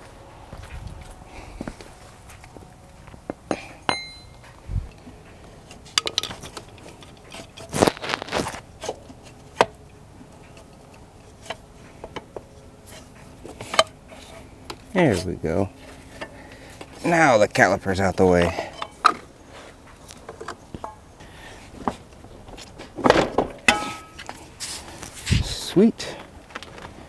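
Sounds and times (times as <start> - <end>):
metallic clinks of tools and parts: 3.4 - 7.7.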